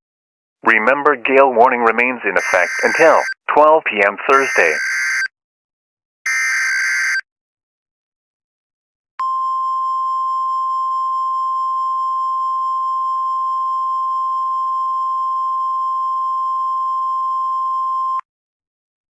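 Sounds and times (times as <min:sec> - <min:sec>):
steady high-pitched alert tone: 0:02.4 - 0:03.4.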